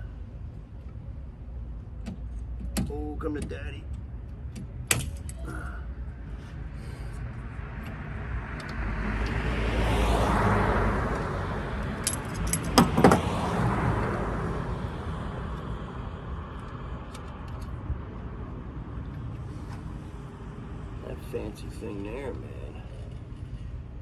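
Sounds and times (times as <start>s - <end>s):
vehicle passing by: 6.5s - 16.9s.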